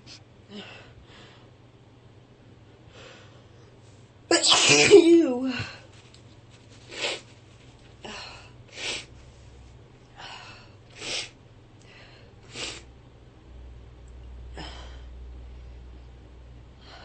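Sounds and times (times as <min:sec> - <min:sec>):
woman sneezing: 0:04.3 - 0:05.6.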